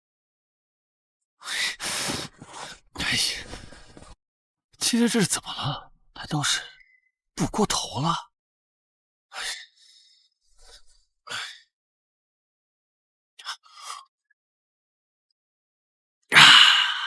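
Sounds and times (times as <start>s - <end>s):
man breathing heavily: 1.5s - 4.1s, 16.4s - 17.0s
man sighing loudly: 16.4s - 17.0s.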